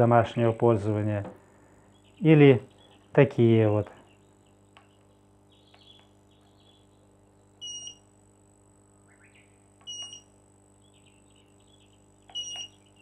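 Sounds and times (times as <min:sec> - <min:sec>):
faint low hum: 0:00.0 - 0:13.0
high electronic beep: 0:07.6 - 0:08.0, 0:12.3 - 0:12.8.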